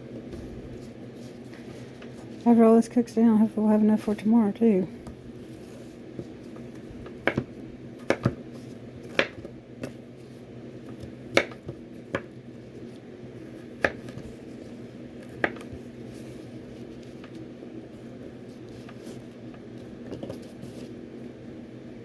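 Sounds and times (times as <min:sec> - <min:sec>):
steady low hum: 0:00.0 - 0:22.0
knife chopping on cutting board: 0:07.2 - 0:08.4, 0:09.0 - 0:09.5, 0:11.0 - 0:12.3.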